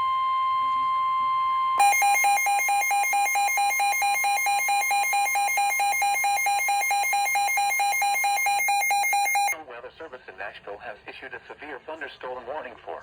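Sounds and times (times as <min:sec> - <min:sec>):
electronic warble alarm tone: 0:00.0 - 0:09.6.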